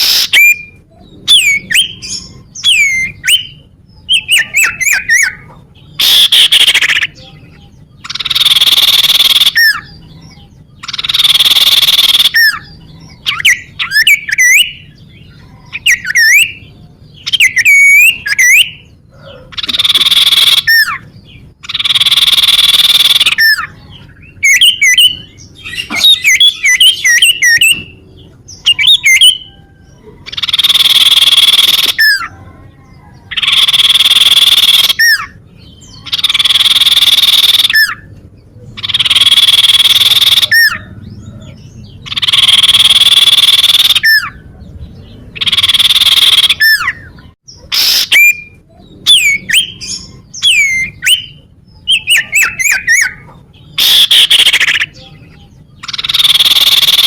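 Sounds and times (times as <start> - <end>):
bird harsh rasping calls: 0.0 - 57.0.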